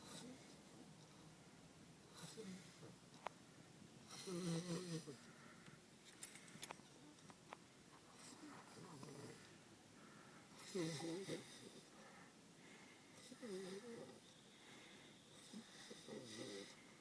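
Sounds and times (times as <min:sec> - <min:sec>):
man snoring: 0:04.1 - 0:05.2, 0:10.6 - 0:11.8, 0:13.2 - 0:14.2, 0:15.4 - 0:16.8.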